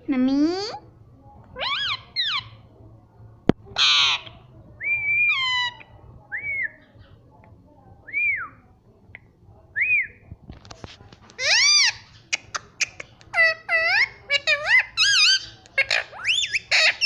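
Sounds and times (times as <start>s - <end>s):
parrot squawk: 1.6s - 2.6s, 3.8s - 4.4s, 11.4s - 17.0s.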